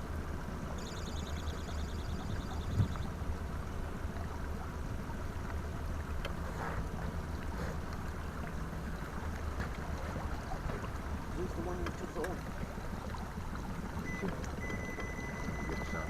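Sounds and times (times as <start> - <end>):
boat motor hum: 0.0 - 16.0
wind and water noise: 0.0 - 16.0.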